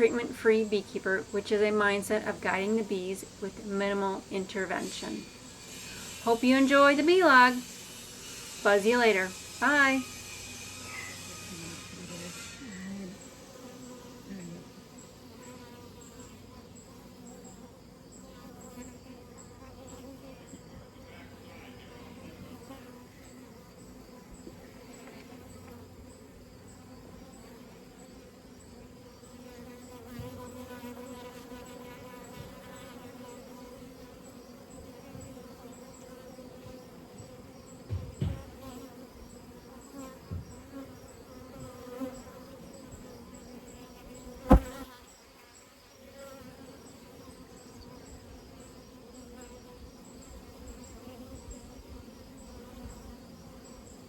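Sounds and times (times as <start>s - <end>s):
honeybees buzzing: 0.0s - 54.0s
dull knocks: 37.9s - 38.5s, 44.5s - 44.9s
sharp loud tap: 44.5s - 44.9s.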